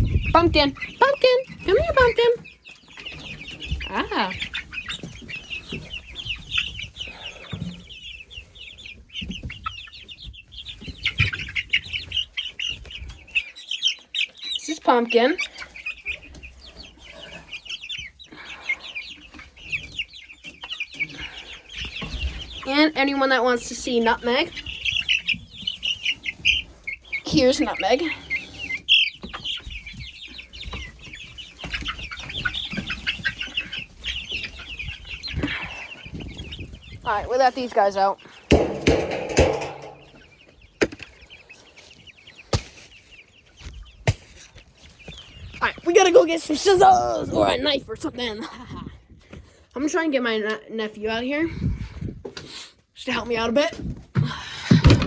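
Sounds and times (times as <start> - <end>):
baby chicks peeping: 0.0 - 55.0
low knocks: 38.5 - 40.3.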